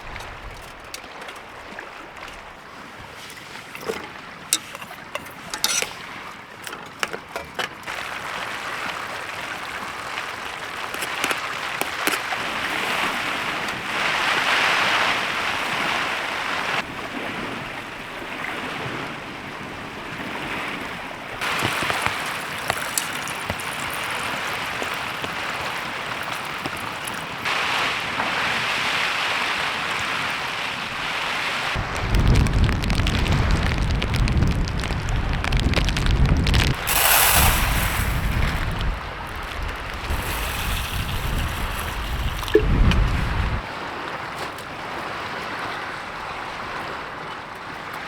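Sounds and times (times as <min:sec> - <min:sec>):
wind gusts buffeting microphone: 0:00.0 - 0:02.6, 0:29.2 - 0:43.7
heavy rain: 0:21.4 - 0:43.7.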